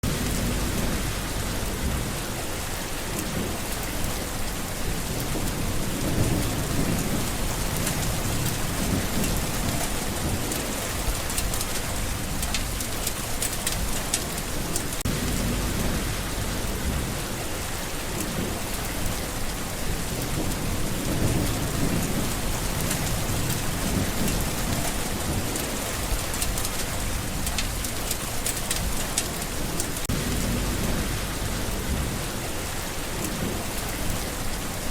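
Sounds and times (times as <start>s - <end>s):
low rumbles: 0.0s - 2.5s, 15.0s - 17.4s, 30.0s - 32.5s
rain on leaves: 0.0s - 34.9s.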